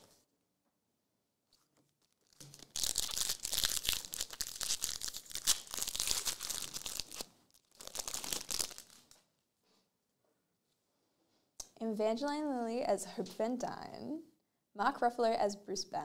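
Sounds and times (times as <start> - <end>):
card pack wrapper tearing and crinkling: 2.0 - 9.2.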